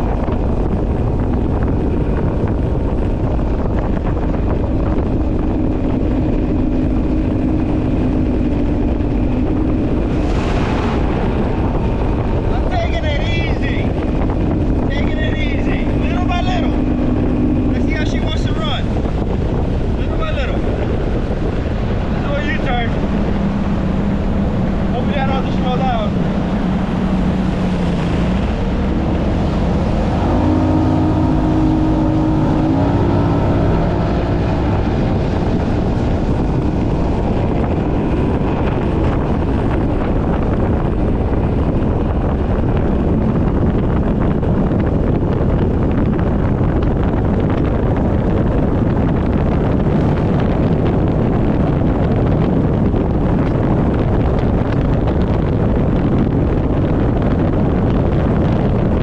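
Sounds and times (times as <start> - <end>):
water rushing: 0.0 - 44.0
outboard engine running: 0.0 - 59.0
wind noise on microphone: 0.0 - 59.0.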